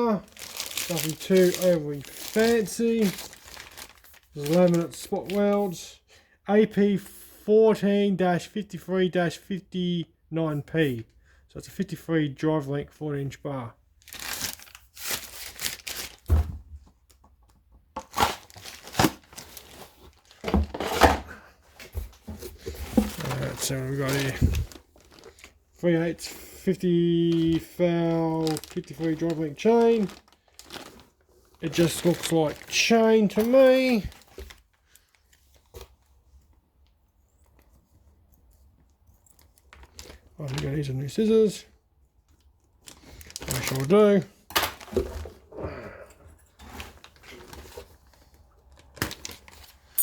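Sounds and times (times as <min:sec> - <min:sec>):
packaging crinkling and rustling: 0:00.0 - 0:05.8, 0:14.0 - 0:17.2, 0:18.0 - 0:26.0, 0:27.2 - 0:36.0, 0:39.0 - 0:41.3, 0:42.3 - 0:45.4, 0:46.6 - 0:50.0.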